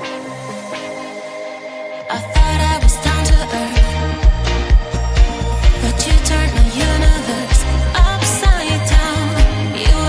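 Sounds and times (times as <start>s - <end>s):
gliding melody: 0.0s - 10.0s
bass line: 2.4s - 10.0s
kick drum: 2.4s - 10.0s.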